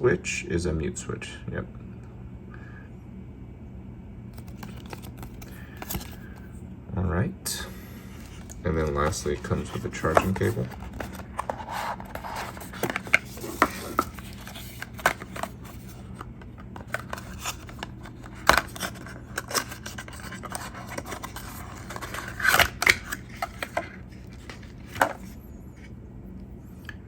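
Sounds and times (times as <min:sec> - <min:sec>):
packaging crinkling and scratching: 0:04.4 - 0:06.4, 0:08.2 - 0:25.4.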